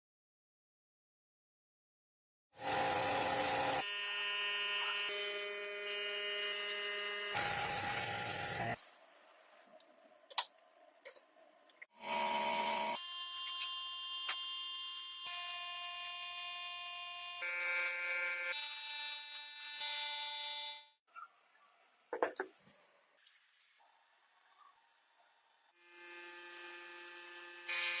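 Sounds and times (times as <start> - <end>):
electric tool motor whining: 2.6 - 8.8, 11.9 - 21.0, 25.8 - 28.0.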